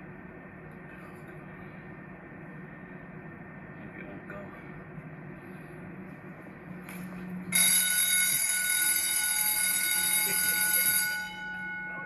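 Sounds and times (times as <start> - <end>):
fire alarm bell ringing: 7.5 - 12.0.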